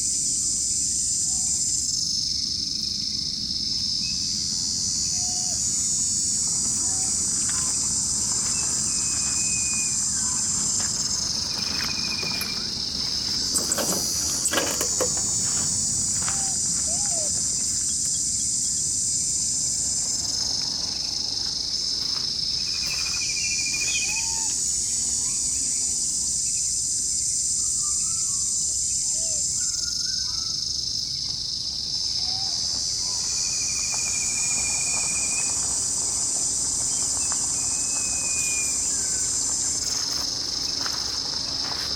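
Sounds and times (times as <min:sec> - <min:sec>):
insect chorus buzzing: 0:00.0 - 0:41.9
high whistle-like calls: 0:04.9 - 0:12.7, 0:13.6 - 0:17.7
rustling and crackling: 0:06.2 - 0:18.2.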